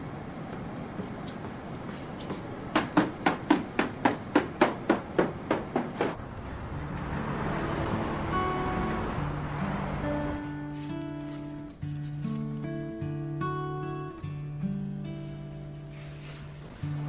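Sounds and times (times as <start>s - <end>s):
quiet guitar music: 6.6s - 17.0s.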